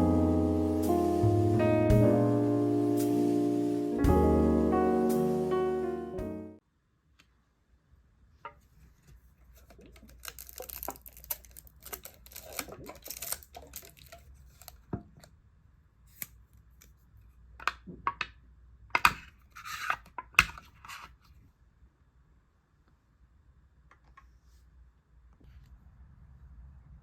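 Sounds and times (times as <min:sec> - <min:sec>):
rustling and scraping: 0:08.4 - 0:14.9.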